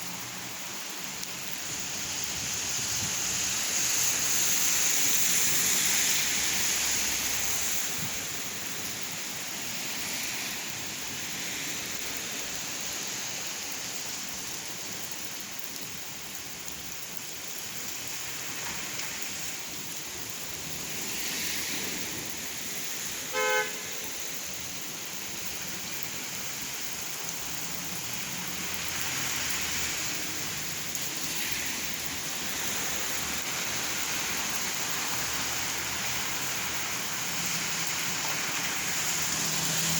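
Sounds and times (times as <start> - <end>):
steady rain falling: 0.0 - 39.9
vehicles passing on wet road: 0.0 - 39.9
car horn toot: 23.3 - 23.8.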